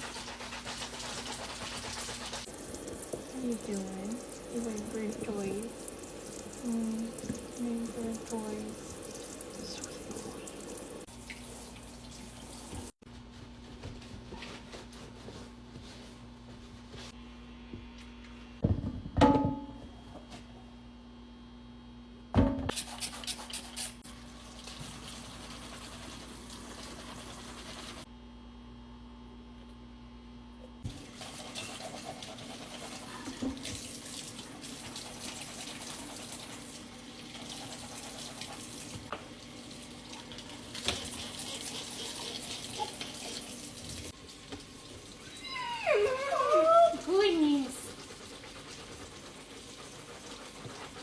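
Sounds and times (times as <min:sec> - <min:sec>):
tap water running into sink: 0:01.2 - 0:13.0, 0:30.9 - 0:45.3.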